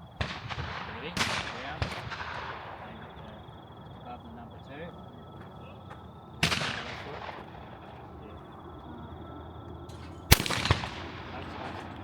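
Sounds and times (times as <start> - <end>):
shotgun shots: 0.2 - 3.4, 6.4 - 8.1, 9.9 - 12.0.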